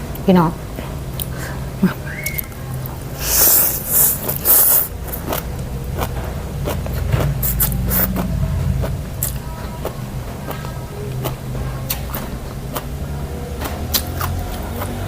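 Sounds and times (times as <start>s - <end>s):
low hum: 0.0s - 13.6s
noodle slurping: 3.2s - 5.4s, 7.4s - 8.3s
mouth clicks of chewing: 13.6s - 15.0s.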